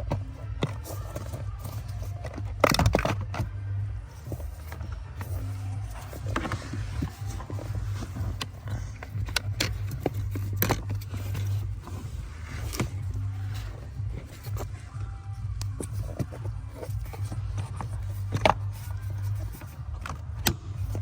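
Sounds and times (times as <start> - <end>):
plastic pedal clicks and knocks: 0.0 - 3.6, 4.2 - 14.8
steady low hum: 0.0 - 21.0.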